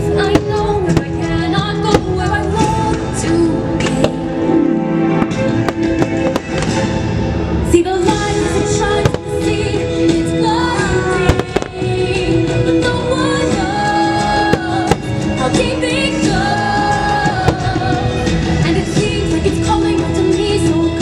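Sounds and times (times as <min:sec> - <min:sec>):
music with singing over loudspeakers: 0:00.0 - 0:21.0
fireworks bursting: 0:05.2 - 0:06.9, 0:08.7 - 0:09.8, 0:11.2 - 0:12.2, 0:14.4 - 0:15.3.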